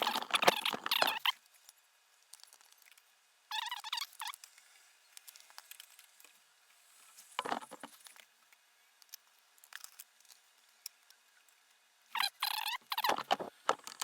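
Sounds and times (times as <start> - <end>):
handling noise: 7.4 - 8.0.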